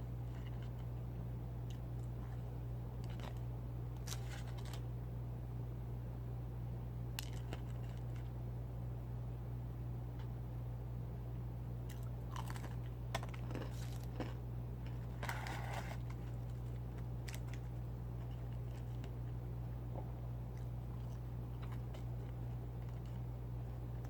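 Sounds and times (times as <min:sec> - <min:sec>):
steady low hum: 0:00.0 - 0:24.0
person crunching and chewing food: 0:01.7 - 0:04.8, 0:07.2 - 0:08.3, 0:11.8 - 0:24.0.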